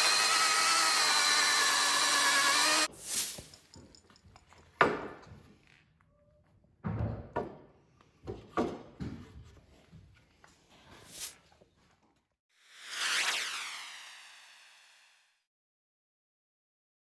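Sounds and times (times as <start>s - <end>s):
wood knocking and thudding: 6.8s - 9.4s.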